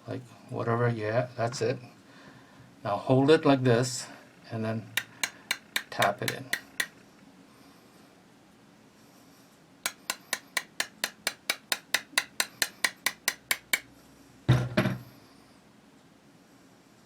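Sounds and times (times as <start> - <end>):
hammer tapping metal: 5.0 - 7.0, 9.9 - 13.9.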